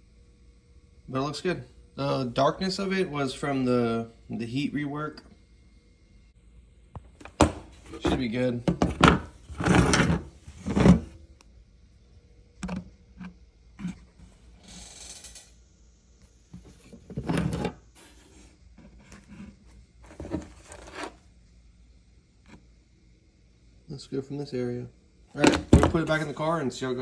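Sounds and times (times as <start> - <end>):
tools scraping and knocking: 7.0 - 11.2, 16.6 - 21.2, 25.4 - 26.3.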